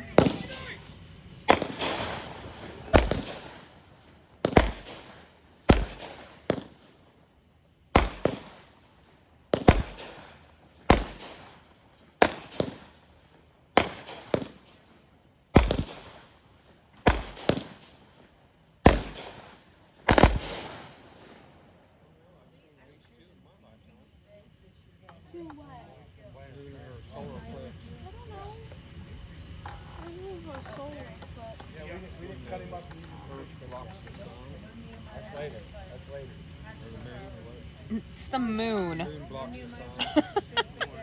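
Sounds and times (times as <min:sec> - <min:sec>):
fireworks bangs with echo: 0:00.0 - 0:00.8, 0:01.4 - 0:07.2, 0:07.9 - 0:21.8.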